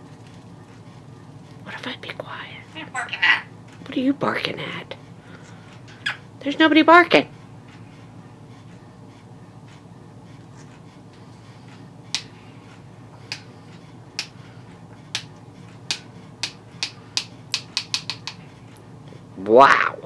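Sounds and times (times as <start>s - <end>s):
fan humming: 0.0s - 20.0s
parrot clicking: 13.2s - 13.5s, 14.1s - 14.4s, 15.1s - 18.4s.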